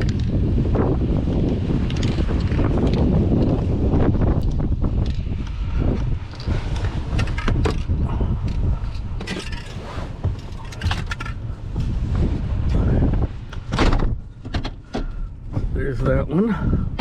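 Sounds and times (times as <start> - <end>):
vehicle rumbling on dirt track: 0.0 - 17.0
loose items rattling: 9.2 - 9.8, 10.4 - 11.8.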